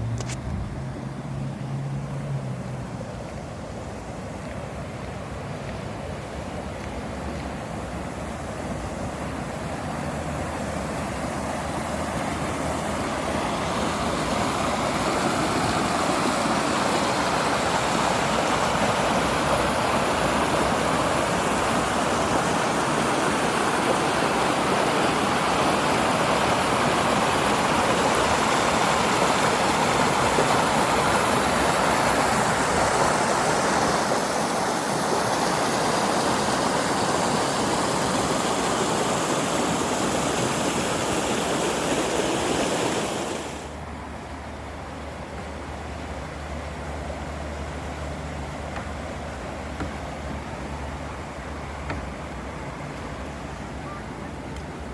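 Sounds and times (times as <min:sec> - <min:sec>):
stream water rushing: 0:00.0 - 0:54.9.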